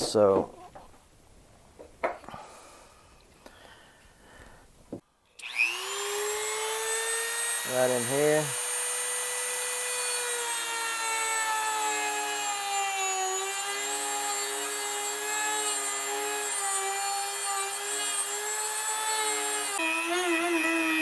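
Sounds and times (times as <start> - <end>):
rotary tool motor whine: 5.4 - 21.0.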